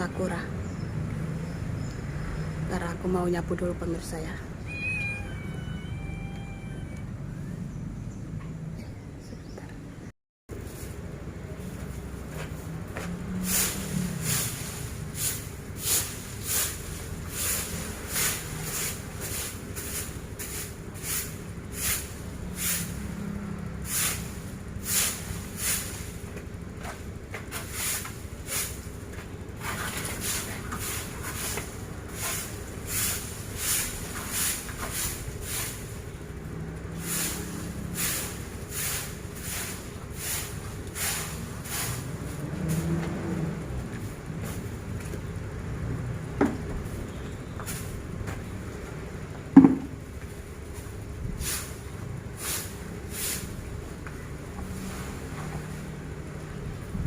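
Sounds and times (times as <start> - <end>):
broom sweeping leaves: 4.7 - 6.9, 10.5 - 45.0, 46.8 - 48.6, 49.9 - 56.9.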